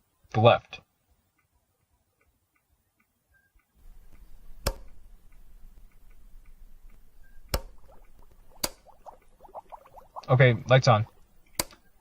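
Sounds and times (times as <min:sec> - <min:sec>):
faint ticking: 0:01.3 - 0:12.0
light switch clicking: 0:04.6 - 0:05.0, 0:11.5 - 0:11.8.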